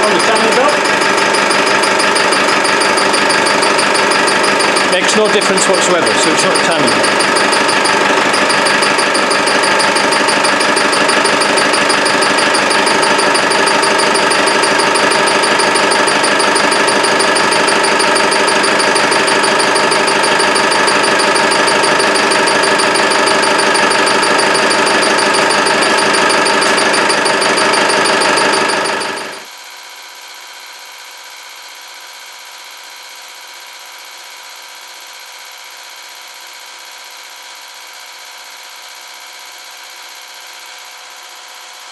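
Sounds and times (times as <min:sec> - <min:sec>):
rhythmic chirping tick: 0:00.0 - 0:29.5.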